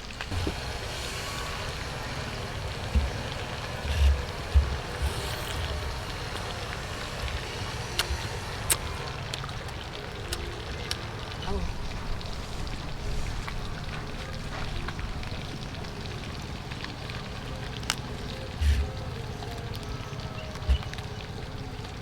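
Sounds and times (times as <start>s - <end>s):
low thumps: 0.0s - 16.0s
hot oil sizzling: 0.0s - 22.0s
sharp ticks: 0.2s - 12.3s.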